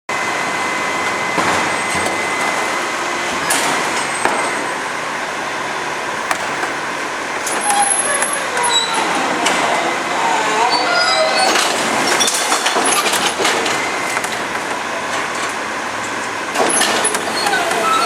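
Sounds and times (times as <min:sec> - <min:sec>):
truck engine and hydraulic whine: 0:00.1 - 0:18.0.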